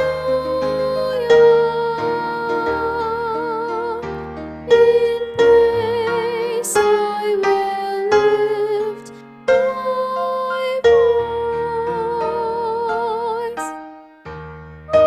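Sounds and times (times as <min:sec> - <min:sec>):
soprano singing a hymn: 0:00.0 - 0:13.9
piano accompaniment: 0:00.0 - 0:15.0.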